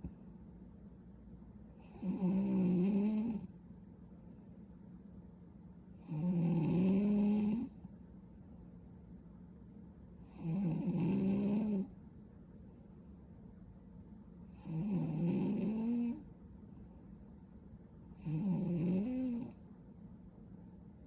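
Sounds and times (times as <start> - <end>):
woman snoring: 1.8 - 3.5, 6.0 - 7.7, 10.3 - 11.9, 14.6 - 16.2, 18.2 - 19.6.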